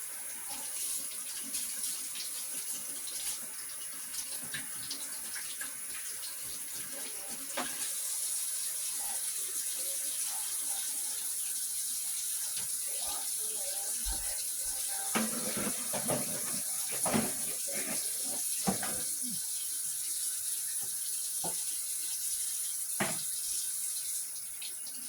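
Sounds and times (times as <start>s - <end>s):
tap running into sink: 14.1s - 19.3s, 20.8s - 21.7s, 23.0s - 23.4s.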